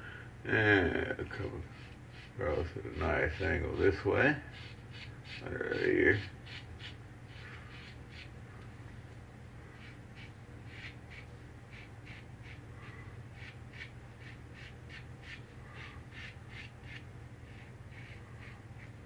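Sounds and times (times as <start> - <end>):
razor scraping through stubble: 1.4 - 8.3, 9.8 - 19.0.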